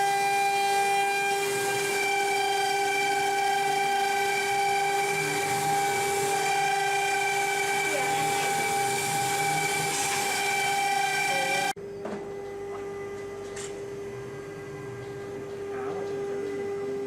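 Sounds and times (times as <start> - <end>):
plasma cutter torch whine: 0.0 - 11.8
torch hiss: 3.6 - 11.8.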